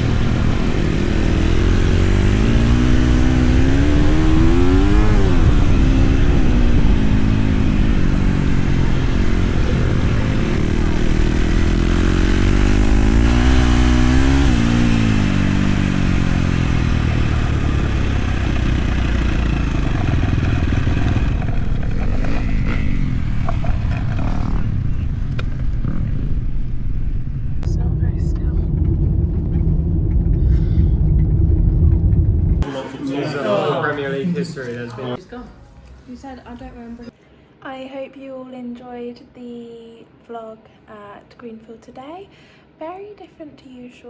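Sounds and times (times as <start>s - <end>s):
motorcycle engine revving: 0.0s - 32.7s.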